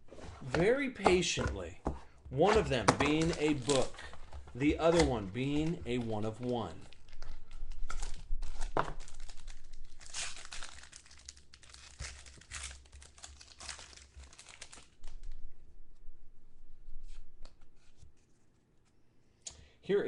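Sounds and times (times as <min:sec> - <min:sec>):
plastic wrapping tearing and crinkling: 0:03.1 - 0:15.4.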